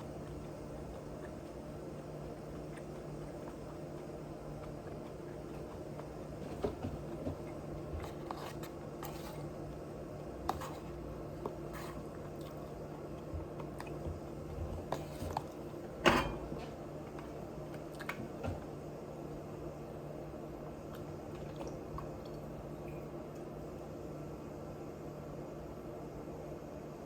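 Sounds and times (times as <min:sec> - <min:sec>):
chewing and munching food: 0:00.0 - 0:16.0, 0:20.6 - 0:23.0
steady low hum: 0:00.0 - 0:23.9.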